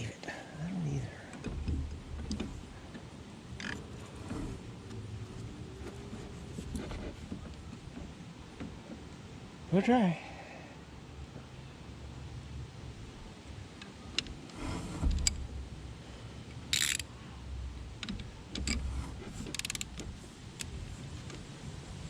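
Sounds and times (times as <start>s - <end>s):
ratchet clicks: 16.7s - 17.1s, 19.4s - 20.0s
metal clicks and clinks: 16.8s - 17.0s.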